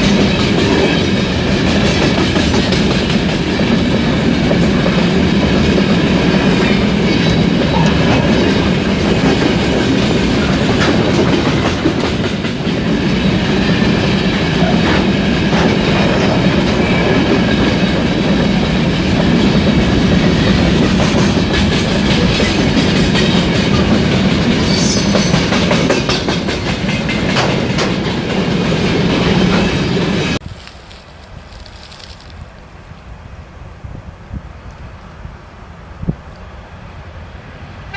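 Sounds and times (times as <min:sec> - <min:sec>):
clickety-clack over rail joints: 0:00.0 - 0:30.4
train wheels rumbling on rails: 0:00.0 - 0:37.9
high squeal of train wheels: 0:22.2 - 0:23.9, 0:24.6 - 0:25.7.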